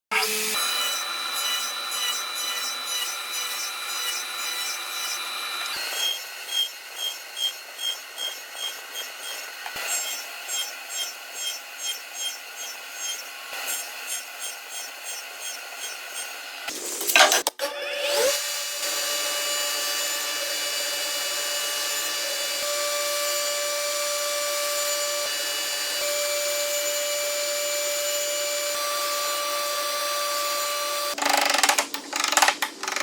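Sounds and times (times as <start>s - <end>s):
hand tool scraping wood: 1.4s - 16.4s.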